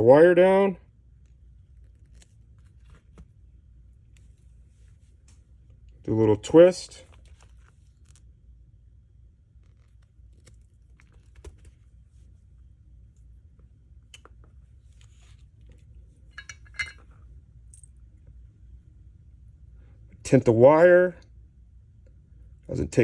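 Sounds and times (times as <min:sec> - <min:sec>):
small metal parts and tools clicking: 0:16.3 - 0:17.1.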